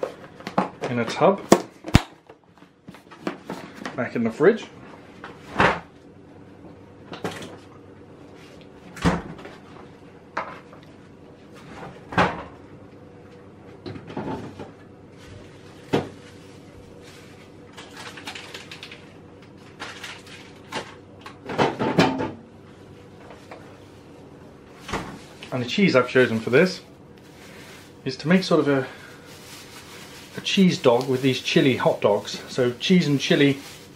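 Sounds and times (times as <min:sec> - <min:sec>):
kitchen rattling and knocking: 0:21.4 - 0:22.4.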